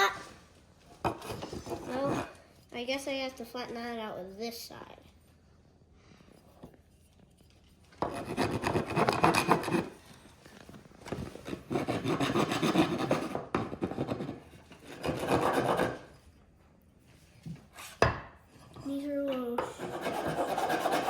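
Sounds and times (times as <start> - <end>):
hand file rasping on wood: 1.1 - 2.4, 8.0 - 10.0, 11.4 - 16.1, 19.6 - 21.0.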